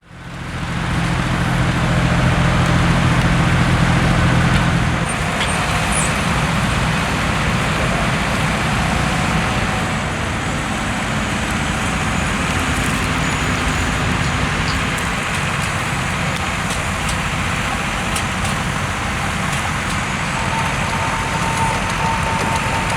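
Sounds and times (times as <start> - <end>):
tractor engine running: 0.0 - 22.9.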